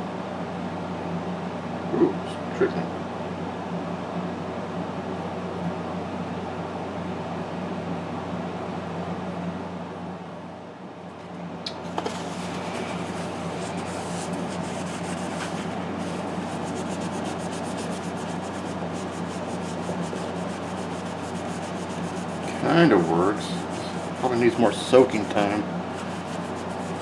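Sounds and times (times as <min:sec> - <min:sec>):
scrubbing on plastic part: 0:11.9 - 0:27.0.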